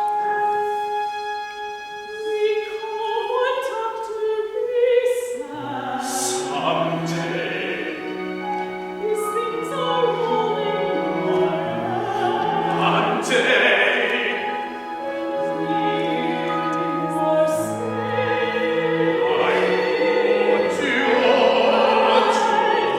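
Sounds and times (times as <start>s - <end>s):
operatic singing: 2.2s - 22.9s
instrumental accompaniment: 5.8s - 22.9s.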